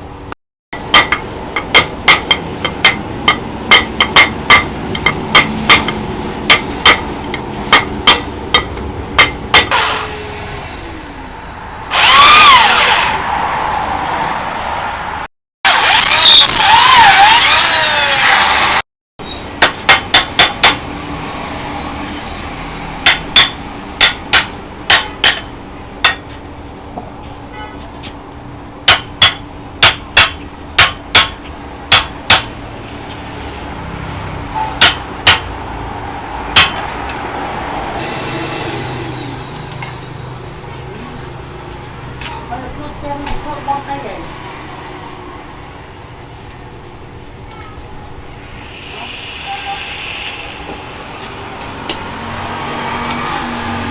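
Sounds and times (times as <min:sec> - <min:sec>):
hammer striking metal: 0:00.8 - 0:10.3, 0:19.6 - 0:20.9, 0:23.0 - 0:26.3, 0:28.8 - 0:32.6, 0:34.5 - 0:35.7, 0:36.5 - 0:37.2
power tool whining: 0:11.8 - 0:13.2, 0:15.7 - 0:18.8.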